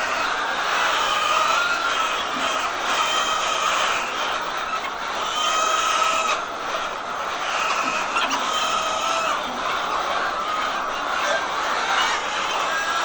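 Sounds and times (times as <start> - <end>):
hens clucking: 0.0 - 13.0.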